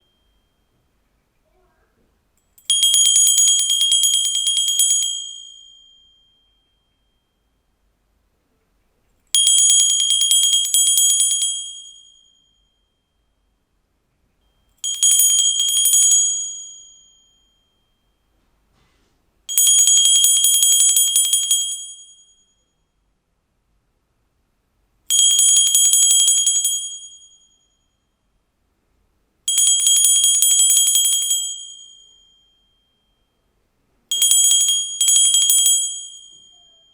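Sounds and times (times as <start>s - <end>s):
hand bell ringing: 2.6s - 7.5s, 9.4s - 13.1s, 14.4s - 18.2s, 34.1s - 36.9s.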